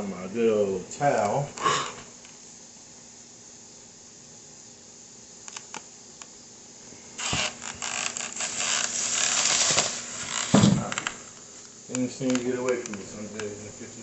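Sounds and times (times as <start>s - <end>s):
faint clicks: 11.6s - 13.6s.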